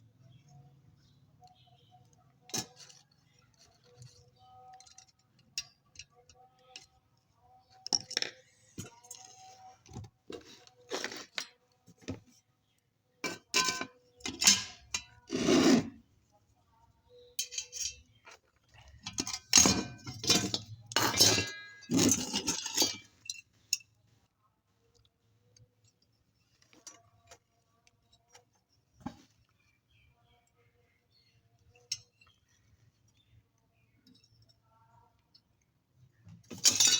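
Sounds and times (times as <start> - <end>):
small metal parts clinking: 17.4 - 23.9, 36.5 - 36.9.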